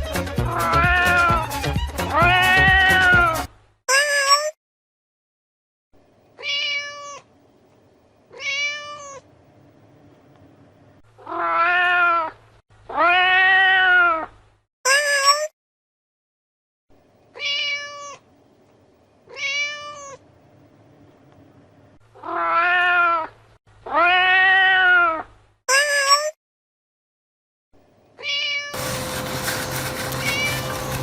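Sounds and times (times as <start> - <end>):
cat meowing: 0.4 - 1.4, 2.1 - 4.6, 6.4 - 7.3, 8.3 - 9.3, 11.2 - 14.3, 17.4 - 18.2, 19.3 - 20.2, 22.2 - 26.3, 28.2 - 28.8, 30.2 - 30.6.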